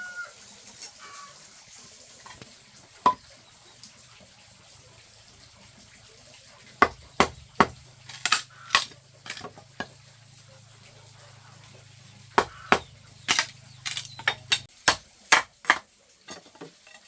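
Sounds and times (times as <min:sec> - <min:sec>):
sharp knocks: 0:03.0 - 0:03.2, 0:06.8 - 0:10.0, 0:12.4 - 0:15.8.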